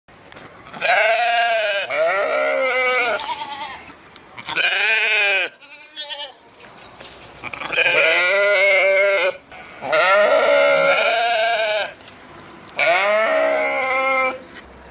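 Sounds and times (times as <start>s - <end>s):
sheep bleating: 0.7s - 6.4s, 7.4s - 12.0s, 12.8s - 14.4s.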